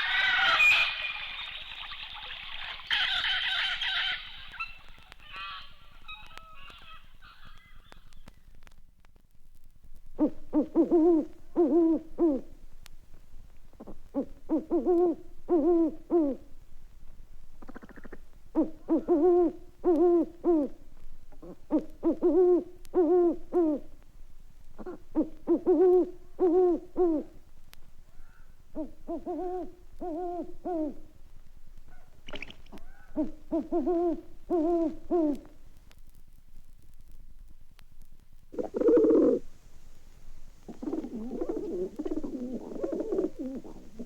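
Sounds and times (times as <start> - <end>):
high-pitched owl cluck: 0.0 - 8.4, 10.2 - 12.6, 13.8 - 16.5, 17.6 - 24.0, 24.8 - 27.4, 28.1 - 31.2, 31.9 - 35.5, 38.6 - 39.5, 40.7 - 44.0
owl hooting: 0.0 - 8.4, 10.2 - 12.6, 13.8 - 16.5, 17.6 - 20.8, 21.4 - 24.0, 24.8 - 27.4, 28.1 - 31.2, 31.9 - 35.5, 38.6 - 39.9, 40.6 - 44.0.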